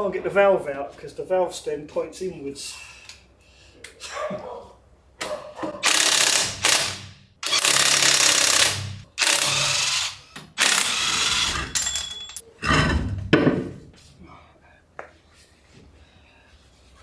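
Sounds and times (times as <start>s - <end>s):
impact wrench hammering: 5.8s - 12.4s.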